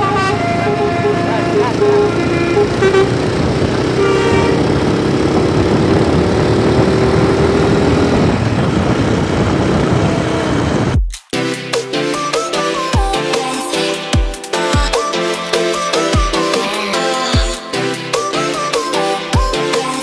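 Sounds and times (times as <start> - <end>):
bus musical air horn: 0.0 - 5.1
engine and road noise: 0.0 - 12.0.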